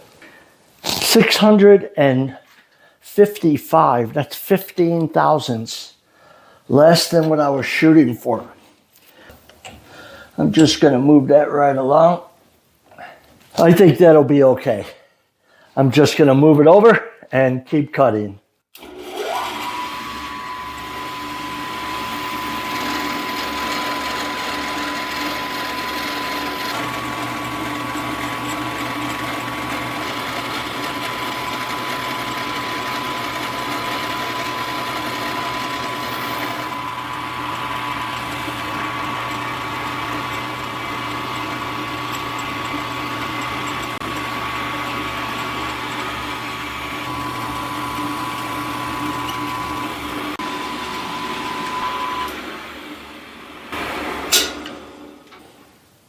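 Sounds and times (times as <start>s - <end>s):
milling machine whining: 18.8s - 55.4s.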